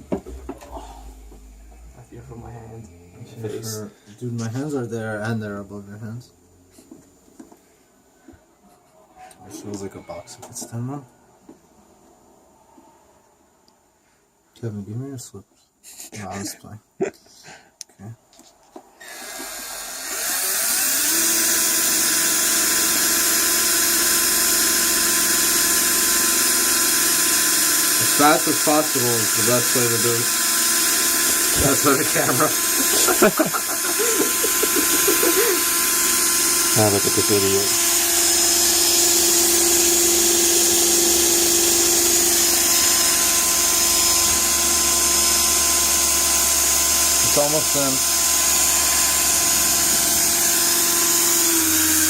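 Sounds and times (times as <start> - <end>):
electric drill boring into wood: 19.0 - 52.0.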